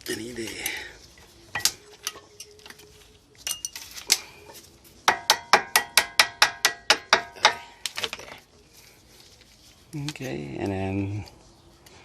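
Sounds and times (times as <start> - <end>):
metal hardware clinking: 3.4 - 4.2.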